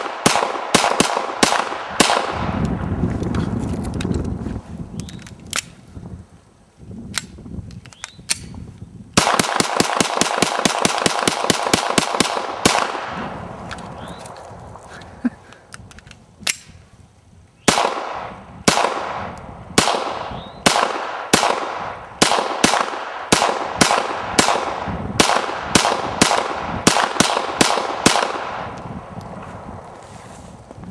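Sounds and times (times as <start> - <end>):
semi-automatic gunshots with echo: 0.0 - 2.6, 9.2 - 13.4, 17.6 - 28.8
sharp gun click: 7.1 - 8.5.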